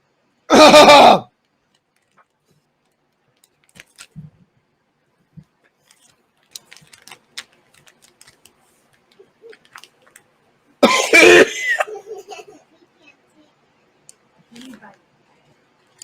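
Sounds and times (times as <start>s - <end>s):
man coughing harshly: 0.5s - 1.3s, 10.8s - 11.9s.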